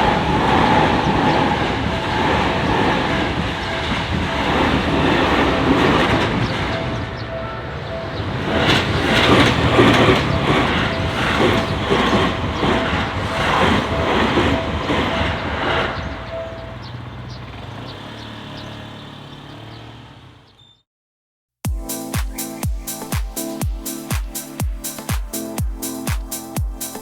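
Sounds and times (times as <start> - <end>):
level crossing bell ringing: 1.5 - 17.3
train wheels clattering over rail joints: 8.6 - 13.9.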